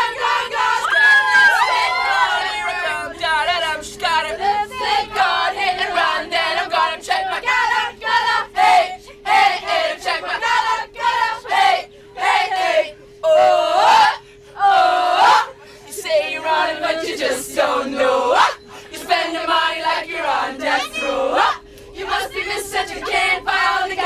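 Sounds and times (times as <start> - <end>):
faint steady hum: 0.0 - 24.0
group singing without instruments: 0.0 - 24.0.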